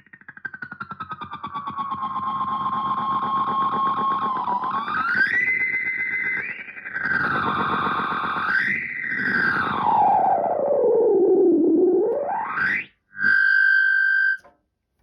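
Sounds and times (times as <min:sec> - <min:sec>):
distorted pitched feedback tone: 0:06.9 - 0:14.5.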